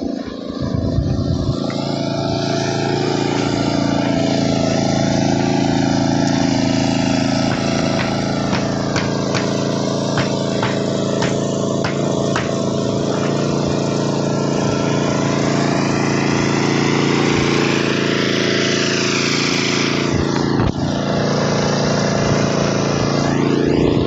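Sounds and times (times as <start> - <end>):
excavator diesel engine running: 0.0 - 24.0
sharp knocks: 7.5 - 9.6, 10.2 - 12.6.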